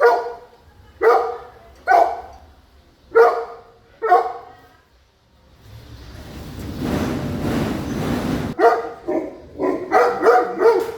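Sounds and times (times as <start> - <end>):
big dog barking: 0.0 - 2.3, 3.1 - 4.5, 8.6 - 10.9.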